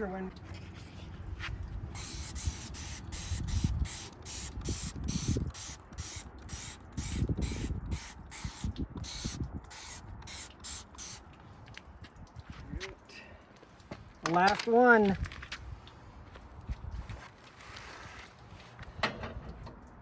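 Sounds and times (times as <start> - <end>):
cordless drill pulsing hiss: 2.0 - 11.2.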